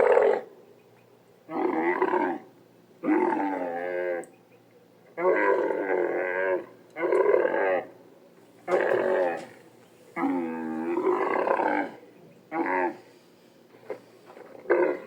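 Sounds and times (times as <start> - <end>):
camel calling: 8.7 - 13.2.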